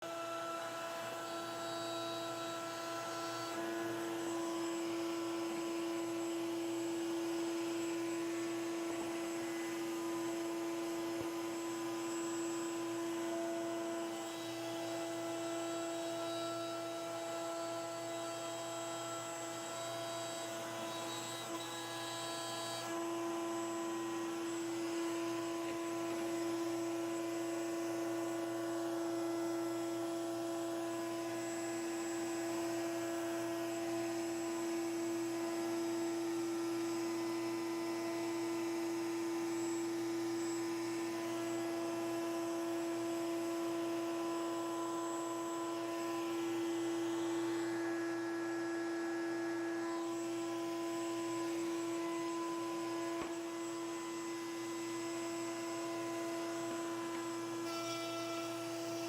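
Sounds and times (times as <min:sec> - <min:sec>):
router motor whining: 0:00.0 - 0:59.0.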